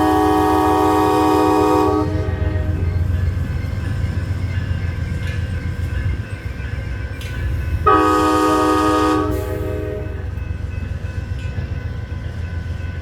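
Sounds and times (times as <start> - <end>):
train air horn: 0.0 - 3.0, 7.8 - 10.3
train rumble: 0.0 - 13.0.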